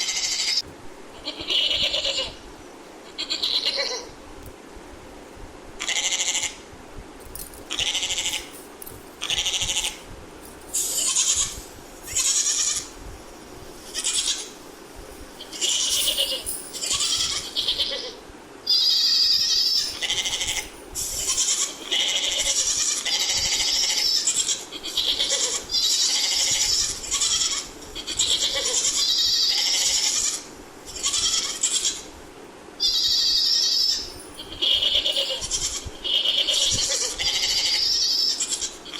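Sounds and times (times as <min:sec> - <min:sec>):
goats bleating: 0:01.2 - 0:02.4, 0:03.1 - 0:04.1, 0:15.4 - 0:32.1, 0:32.8 - 0:38.9.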